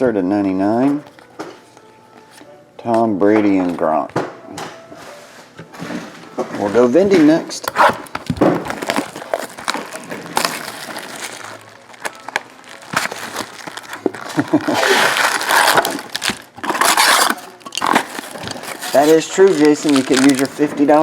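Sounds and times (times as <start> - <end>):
wrappers crinkling: 6.6 - 21.0.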